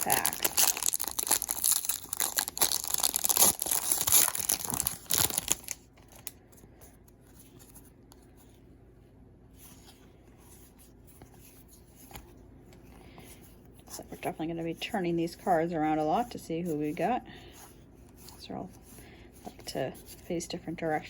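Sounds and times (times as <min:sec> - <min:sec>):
wrapper torn and crinkled: 0:00.0 - 0:06.3.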